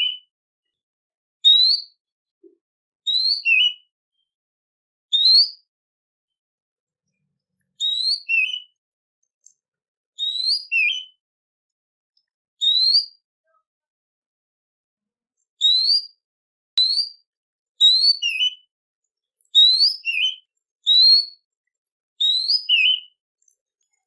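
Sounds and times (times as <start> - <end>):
songbird whistling: 1.4 - 2.0, 3.1 - 3.9, 5.1 - 5.7, 7.8 - 8.8, 10.2 - 11.2, 12.6 - 13.2, 15.6 - 16.2, 16.8 - 18.7, 19.6 - 21.4, 22.2 - 23.2.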